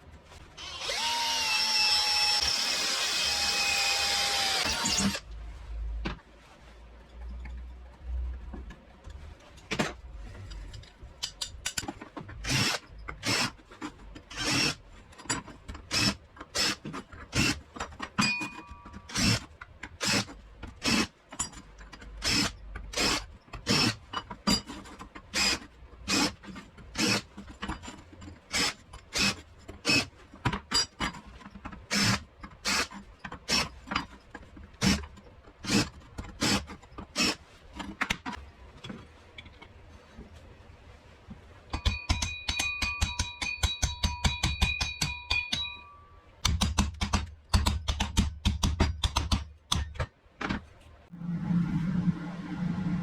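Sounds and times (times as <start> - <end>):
hand tool scraping workpiece: 19.0 - 39.0.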